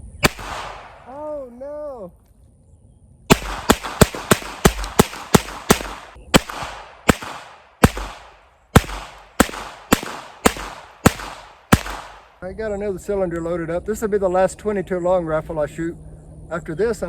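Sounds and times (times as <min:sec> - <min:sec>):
revolver shots: 0:00.0 - 0:01.2, 0:03.3 - 0:12.3.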